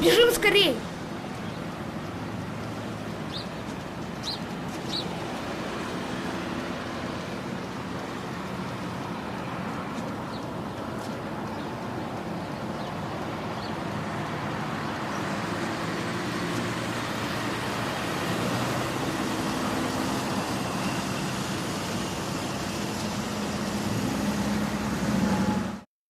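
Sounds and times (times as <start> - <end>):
traffic rumble: 0.0 - 25.8.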